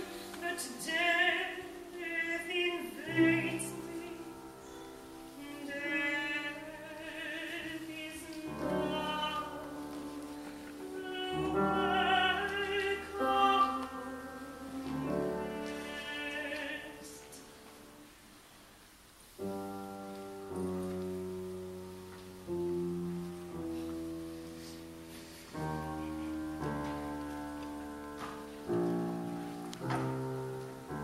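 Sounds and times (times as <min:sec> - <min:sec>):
opera voice singing with vibrato: 0:00.0 - 0:04.7, 0:05.3 - 0:09.9, 0:10.8 - 0:17.6
piano chords: 0:00.0 - 0:31.0.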